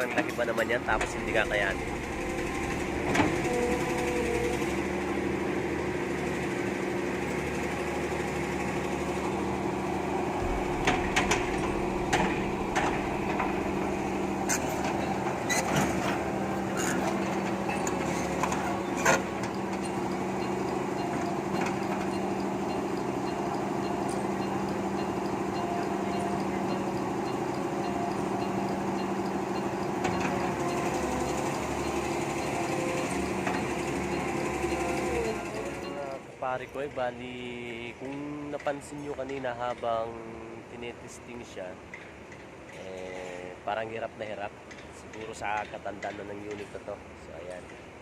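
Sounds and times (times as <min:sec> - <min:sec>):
excavator diesel engine running: 0:00.0 - 0:37.9
metallic knocks and clanks: 0:10.4 - 0:19.9.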